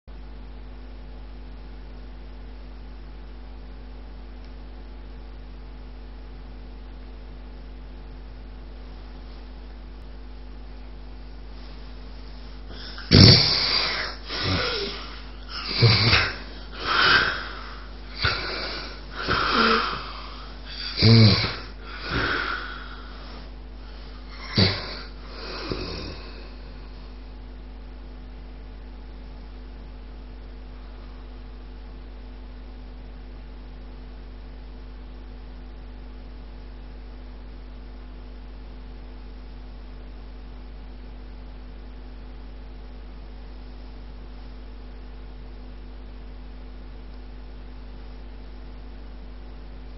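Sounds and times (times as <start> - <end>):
electrical hum and hiss: 0.0 - 49.9
man snoring loudly: 12.7 - 23.4, 24.3 - 26.8.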